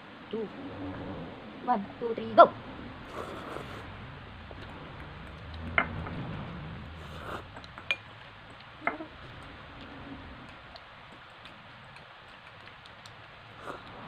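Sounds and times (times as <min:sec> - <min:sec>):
utensils clinking against bowls: 0:07.6 - 0:09.0.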